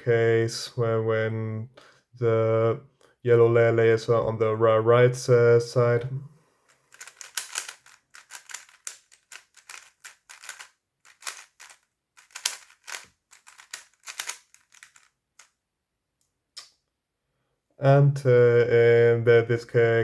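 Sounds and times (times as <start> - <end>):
plastic puzzle cube twisting clicks: 6.9 - 15.1.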